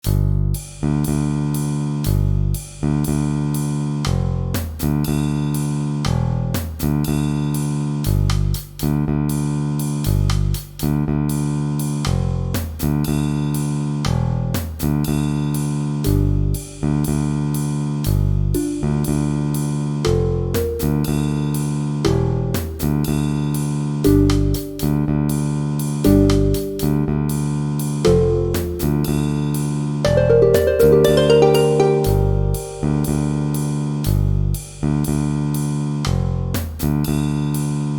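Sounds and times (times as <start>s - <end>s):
bass line: 18.6s - 23.3s, 24.0s - 34.6s
instrumental music with plucked notes: 18.6s - 23.4s, 24.0s - 34.1s.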